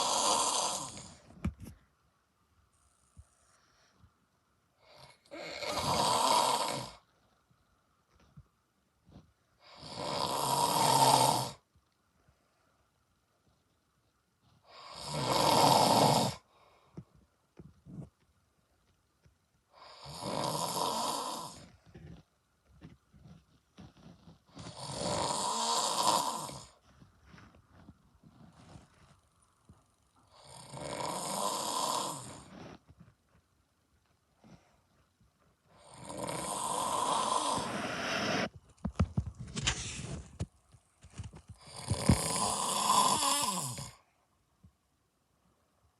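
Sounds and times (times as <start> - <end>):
man snoring: 0.0 - 1.2, 4.8 - 7.0, 9.6 - 11.6, 14.7 - 16.5, 19.8 - 22.1, 24.5 - 26.8, 30.3 - 32.8, 35.8 - 38.5, 41.6 - 44.0.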